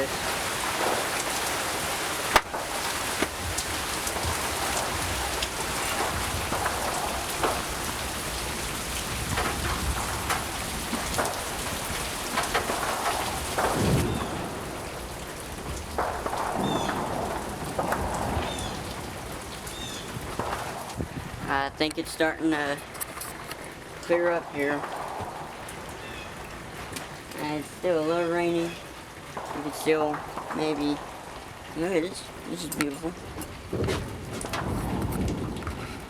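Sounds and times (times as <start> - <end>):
low rumble of thunder: 0.0 - 22.2, 33.1 - 36.0
heavy rain falling: 0.0 - 36.0.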